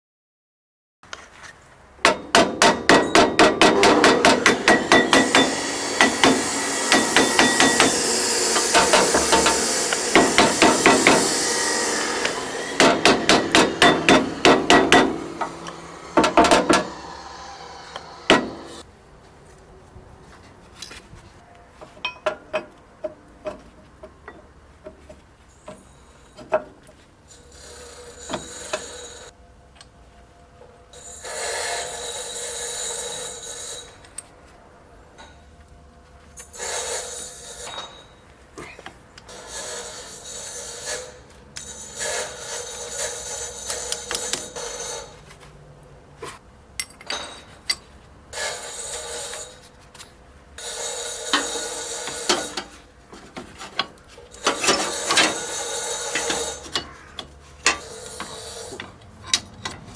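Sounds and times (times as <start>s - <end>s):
hammer striking metal: 2.0s - 18.8s, 22.0s - 24.5s, 36.5s - 38.2s, 46.8s - 49.5s.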